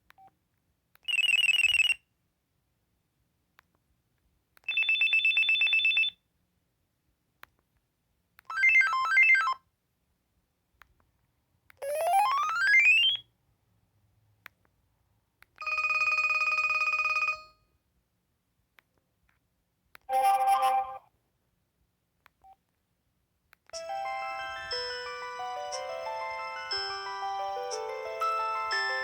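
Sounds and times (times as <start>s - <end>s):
electronic phone ringtones: 1.1s - 2.0s, 4.7s - 6.1s, 15.6s - 17.6s, 23.8s - 29.0s.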